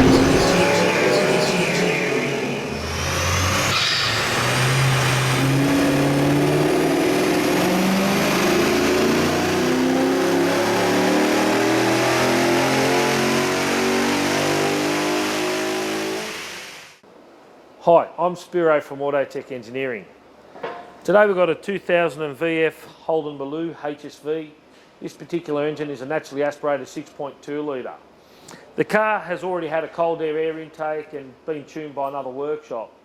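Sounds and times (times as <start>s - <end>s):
engine revving on a dyno: 0.0s - 17.0s.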